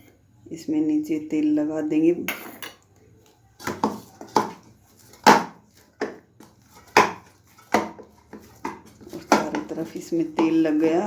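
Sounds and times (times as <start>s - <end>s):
dough slapped by hand: 5.2s - 6.2s, 6.9s - 9.7s.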